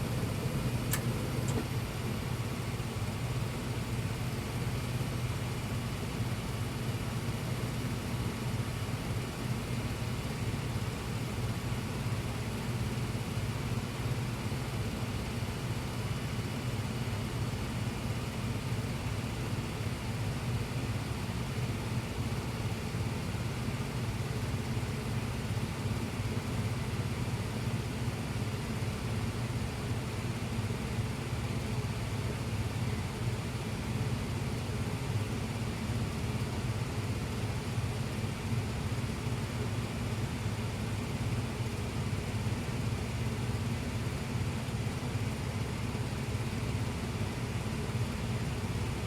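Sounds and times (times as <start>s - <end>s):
furnace humming: 0.0s - 3.9s.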